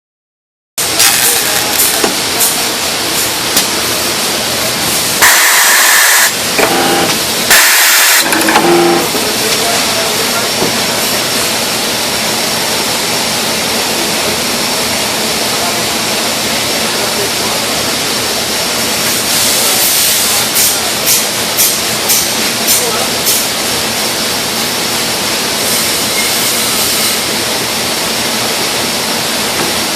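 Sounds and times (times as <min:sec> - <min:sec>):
welding arc crackling and hissing: 0:00.8 - 0:08.4.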